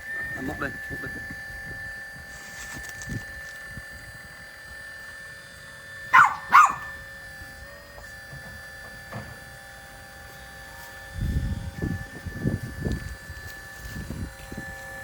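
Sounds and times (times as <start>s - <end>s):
toy excavator motor whine: 0.0s - 15.0s
dog barking: 6.1s - 7.0s.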